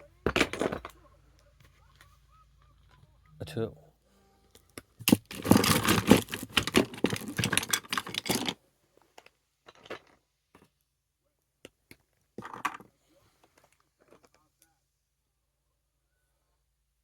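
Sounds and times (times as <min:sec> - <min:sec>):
small ornaments clattering in a box: 0:00.2 - 0:01.0, 0:05.0 - 0:10.8, 0:12.3 - 0:14.4.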